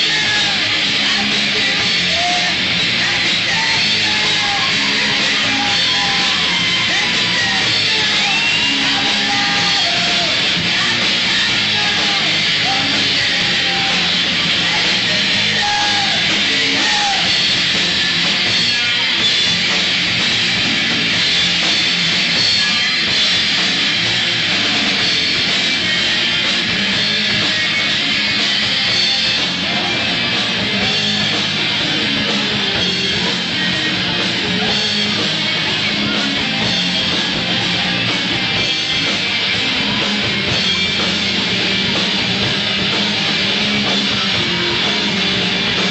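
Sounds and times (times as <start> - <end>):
rock band playing heavy rock: 0.0 - 45.9.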